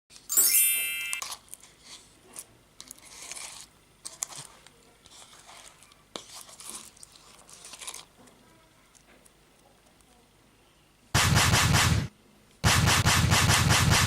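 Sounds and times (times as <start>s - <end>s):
crinkling rustling handling noises: 1.2s - 10.2s.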